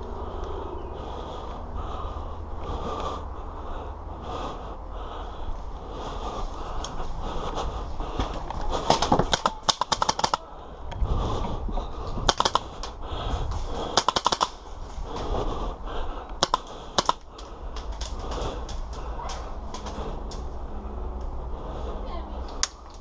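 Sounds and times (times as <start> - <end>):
airsoft guns firing: 8.8 - 10.5, 12.2 - 12.9, 13.9 - 14.7, 16.4 - 17.3.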